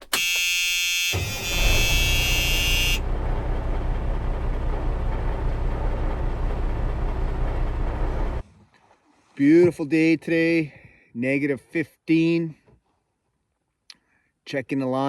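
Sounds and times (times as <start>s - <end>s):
vehicle engine rumbling: 1.2s - 8.5s.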